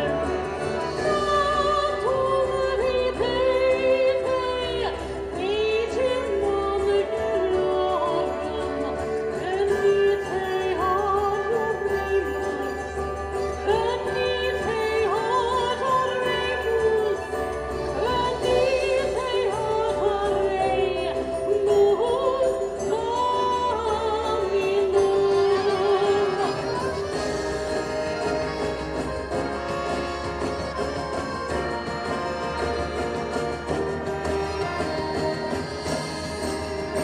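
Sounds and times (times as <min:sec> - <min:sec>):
instrumental backing music: 0:00.0 - 0:37.0.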